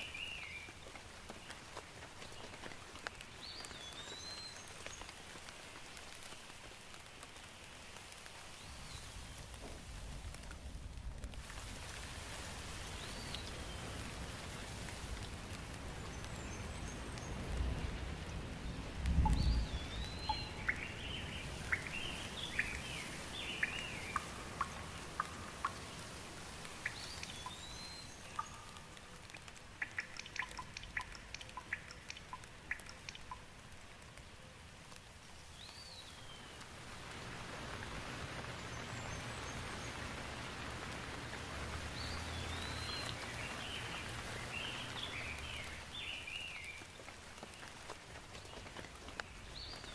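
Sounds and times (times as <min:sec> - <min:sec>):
raindrops ticking close by: 0:00.0 - 0:49.9
steady rain: 0:00.0 - 0:49.9
birds chirping: 0:16.0 - 0:33.4, 0:37.7 - 0:46.9.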